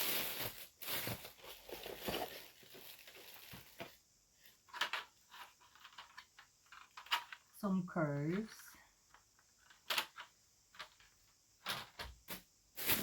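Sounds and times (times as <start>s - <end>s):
plastic packaging rustling: 0.0s - 6.1s, 12.3s - 13.0s
plastic track pieces clicking: 9.6s - 12.0s.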